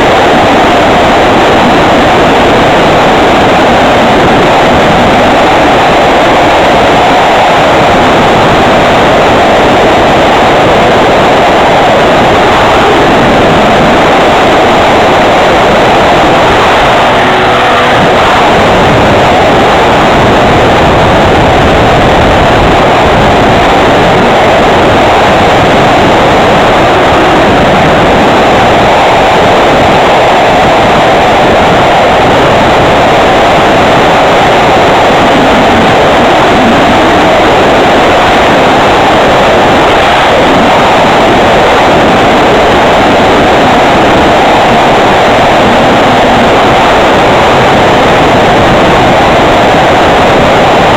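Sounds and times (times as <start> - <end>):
airflow rushing over microphone: 0.0 - 50.9
model plane motor: 12.7 - 23.6.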